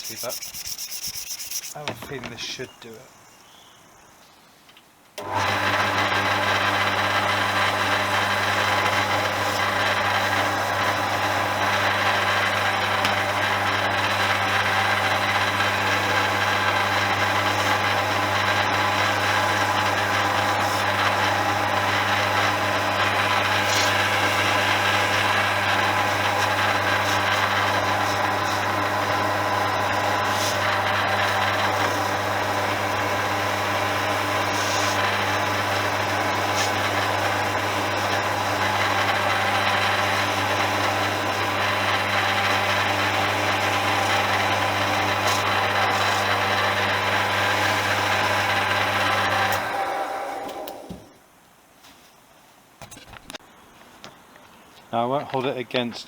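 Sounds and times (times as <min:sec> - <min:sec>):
polishing machine motor hum: 0:00.0 - 0:02.1, 0:05.2 - 0:50.9.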